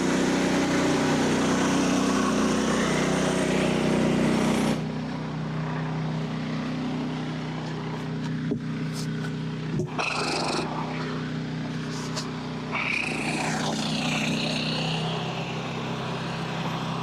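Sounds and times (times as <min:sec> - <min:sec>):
gas engine running: 0:00.0 - 0:17.0
bandsaw blade cutting log: 0:08.0 - 0:15.1.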